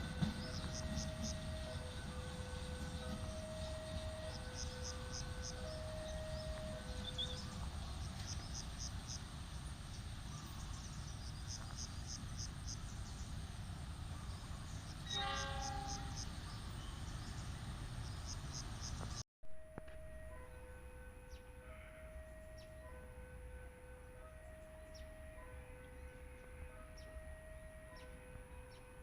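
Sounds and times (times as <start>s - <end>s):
two-tone level-crossing alarm: 0.0s - 8.2s
train horn blast: 0.0s - 8.4s, 15.0s - 17.1s, 19.8s - 28.9s
insects chirping: 0.1s - 19.2s.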